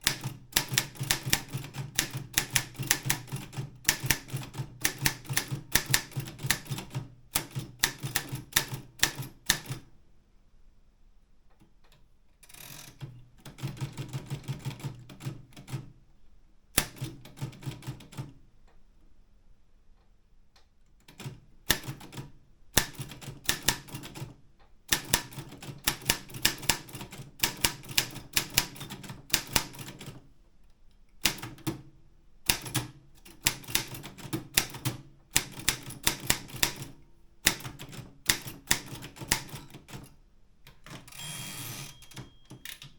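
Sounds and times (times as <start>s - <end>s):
typewriter typebar strikes: 0.0s - 9.8s, 40.8s - 42.9s.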